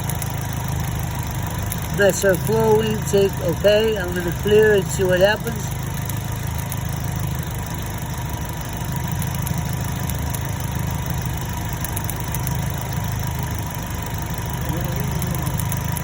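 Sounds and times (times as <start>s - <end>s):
car engine idling: 0.0s - 16.0s.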